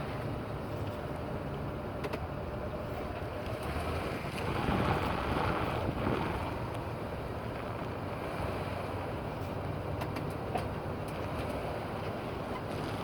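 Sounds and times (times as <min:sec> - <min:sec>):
wind on microphone: 0:03.9 - 0:09.3.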